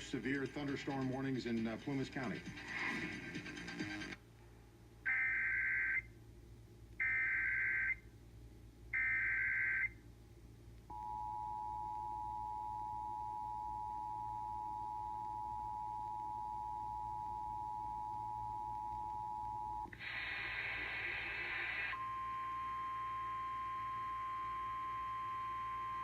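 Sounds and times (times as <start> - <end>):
two-tone attention signal: 21.9 - 26.0.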